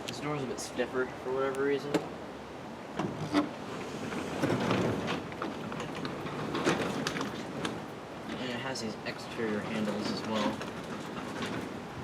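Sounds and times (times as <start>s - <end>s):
garage door rollers rumbling: 3.1s - 7.7s.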